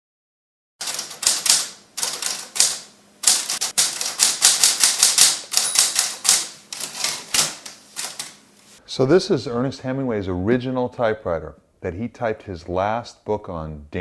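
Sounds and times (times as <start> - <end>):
typewriter keystrokes: 0.8 - 8.4.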